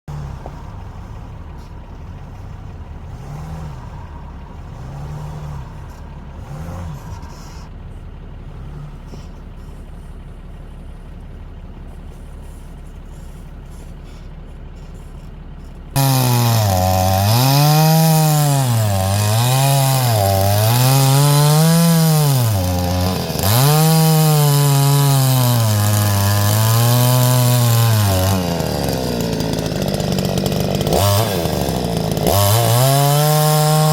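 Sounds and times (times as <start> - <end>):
low engine hum: 0.1 - 33.9
chainsaw cutting wood: 13.1 - 33.9.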